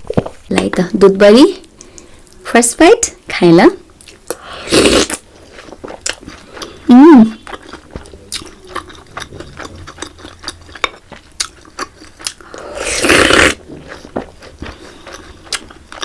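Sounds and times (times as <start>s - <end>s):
wet chewing smacks: 5.4s - 12.6s
loud slurp: 12.6s - 13.6s.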